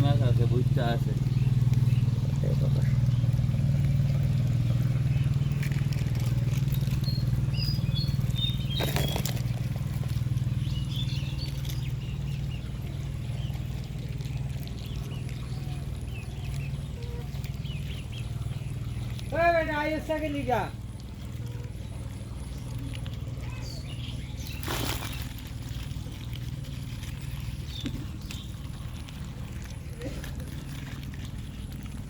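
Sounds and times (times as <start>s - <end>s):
small engine humming: 0.0s - 32.0s
bird chirps: 6.6s - 9.6s, 10.4s - 13.6s.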